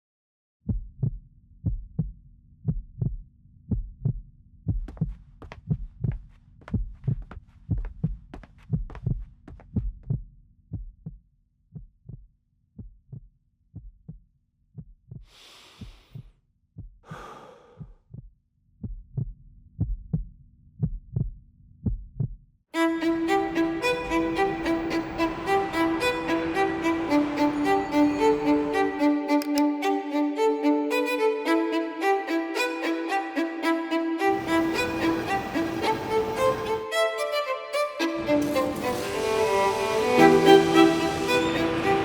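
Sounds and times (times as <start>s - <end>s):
heartbeat double thump: 0.7s - 11.2s.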